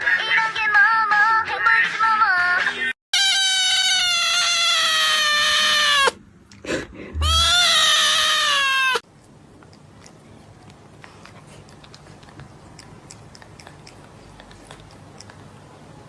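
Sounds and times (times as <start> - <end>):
cat meowing: 3.2 - 6.2, 7.2 - 9.0.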